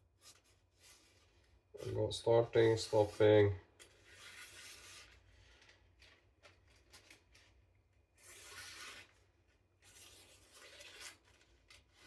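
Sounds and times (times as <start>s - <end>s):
knife slicing paper: 0.2s - 5.6s, 8.1s - 12.0s.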